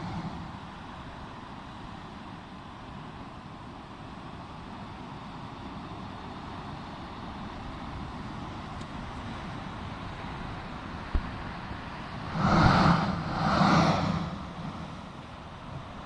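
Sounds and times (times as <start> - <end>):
low rumble: 0.0 - 1.0
sea surf rushing: 0.0 - 1.6, 11.6 - 16.0
wind: 0.0 - 16.0.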